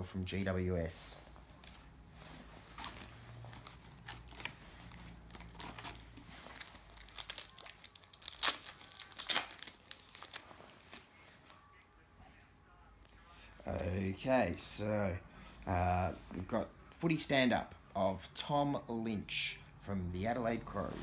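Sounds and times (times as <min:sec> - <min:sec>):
card pack wrapper crinkling: 0:02.8 - 0:11.2.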